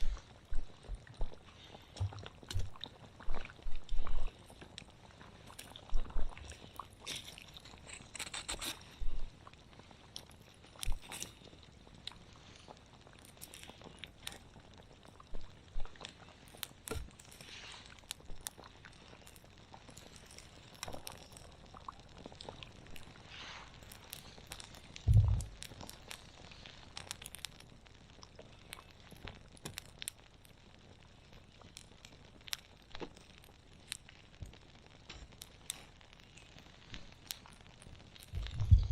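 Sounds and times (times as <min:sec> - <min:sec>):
campfire crackling and popping: 0:00.0 - 0:38.9
faint steady hiss: 0:00.0 - 0:38.9
pot simmering: 0:00.0 - 0:38.9
sharp fire pops: 0:22.2 - 0:30.6, 0:31.6 - 0:38.9.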